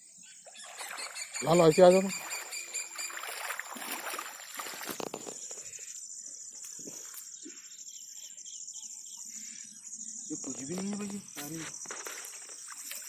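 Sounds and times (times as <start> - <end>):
rustling splashing noise: 0.8 - 5.7.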